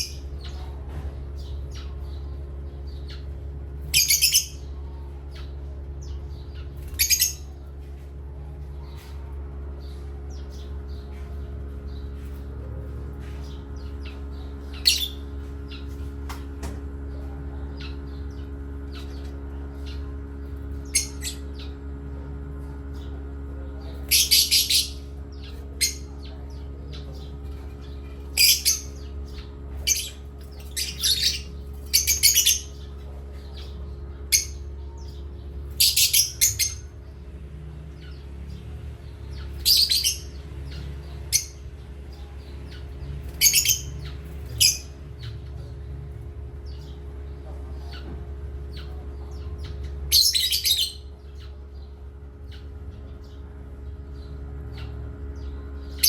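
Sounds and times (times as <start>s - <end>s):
parrots chirping and squawking: 0.0s - 8.0s, 8.8s - 16.4s, 17.1s - 21.8s, 23.8s - 53.4s, 54.2s - 56.0s
steady low hum: 0.0s - 56.0s.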